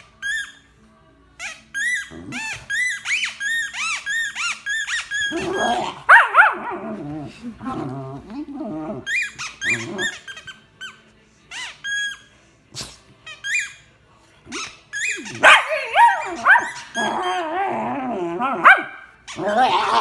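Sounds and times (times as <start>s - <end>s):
dog squeaks and yips: 0.0s - 0.7s, 1.4s - 6.7s, 9.0s - 12.3s, 13.2s - 13.8s, 14.5s - 17.8s, 18.5s - 20.0s
dog whining and growling: 1.7s - 10.6s, 14.5s - 20.0s.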